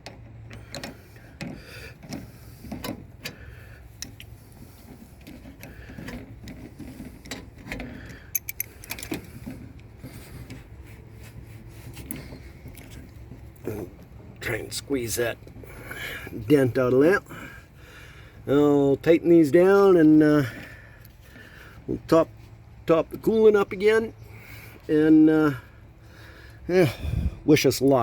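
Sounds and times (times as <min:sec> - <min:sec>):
hand tools clicking and rattling: 0:00.0 - 0:09.9.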